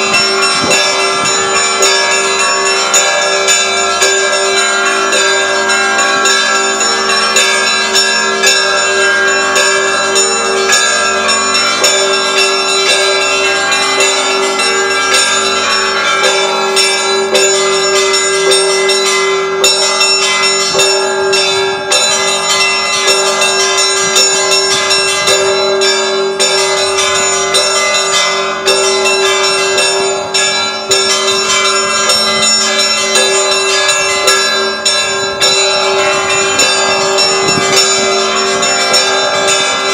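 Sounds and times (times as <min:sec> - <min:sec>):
high bells striking rapidly: 0:00.0 - 0:39.9
sustained bell tone: 0:00.0 - 0:39.9.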